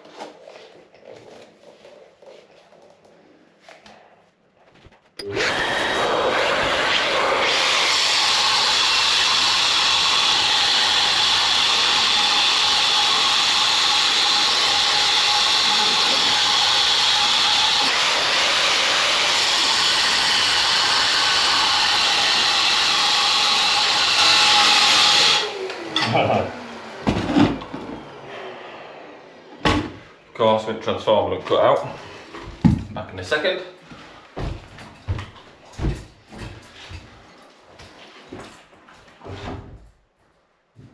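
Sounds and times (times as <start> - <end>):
wall chaser cutting into wall: 5.2 - 30.2.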